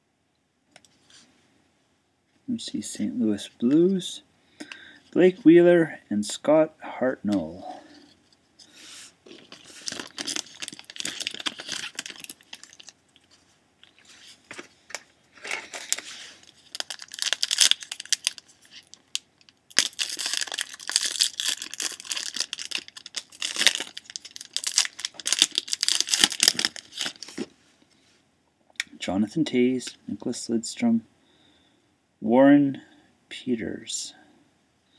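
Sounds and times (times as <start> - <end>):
foil wrappers tearing and crinkling: 9.3 - 13.0, 15.4 - 27.5.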